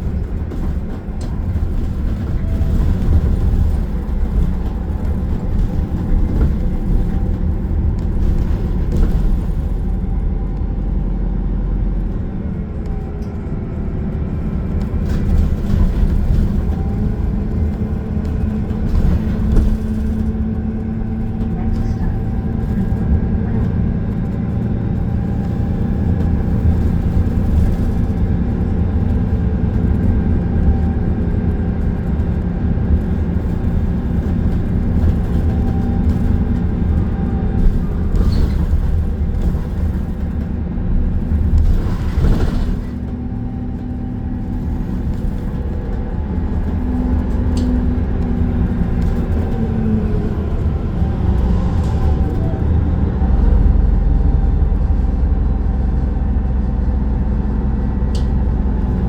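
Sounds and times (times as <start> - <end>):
bus engine and road rumble: 0.0 - 59.0.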